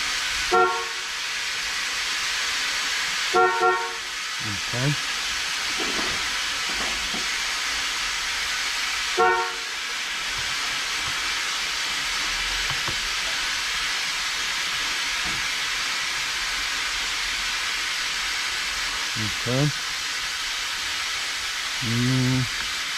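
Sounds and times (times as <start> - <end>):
steady hiss: 0.0 - 22.9
car horn beep: 0.5 - 1.0, 3.4 - 4.0, 9.2 - 9.7.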